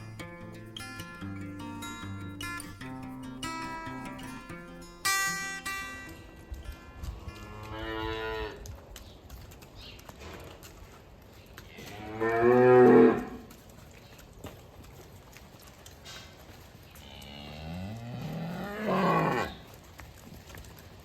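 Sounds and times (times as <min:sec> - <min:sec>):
cow mooing: 0:03.5 - 0:04.5, 0:06.9 - 0:08.6, 0:11.7 - 0:13.5, 0:17.0 - 0:19.6.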